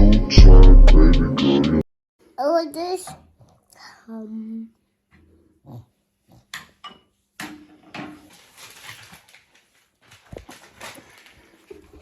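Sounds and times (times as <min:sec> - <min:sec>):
household items clattering: 0:06.6 - 0:12.0.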